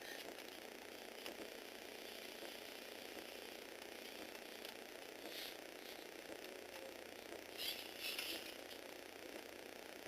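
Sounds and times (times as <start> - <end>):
plastic gear mechanism whirring: 7.2 - 8.9.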